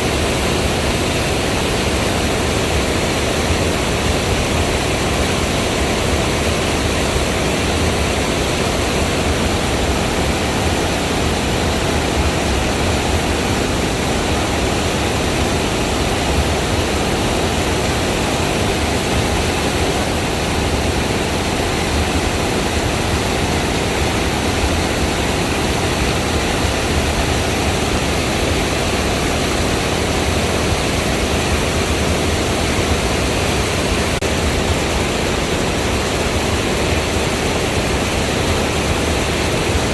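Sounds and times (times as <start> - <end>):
waterfall rushing: 0.0 - 39.9.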